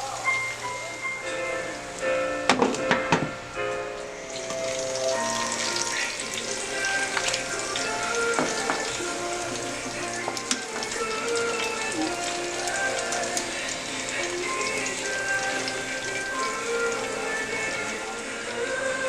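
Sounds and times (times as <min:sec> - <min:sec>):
pork frying in a pan: 0:04.2 - 0:19.0.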